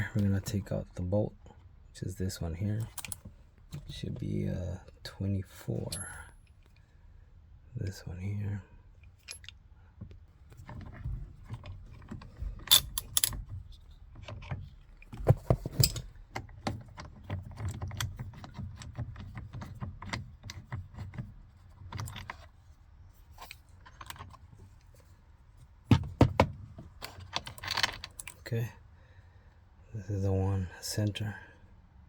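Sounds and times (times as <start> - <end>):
metallic tool clinks: 5.9 - 6.3.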